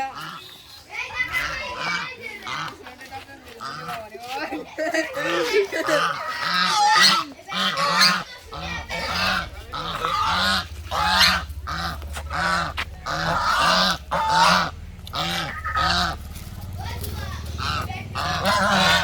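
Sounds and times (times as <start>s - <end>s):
goose honking: 0.0s - 2.8s, 3.6s - 4.0s, 5.2s - 19.0s
low hum: 8.2s - 19.0s.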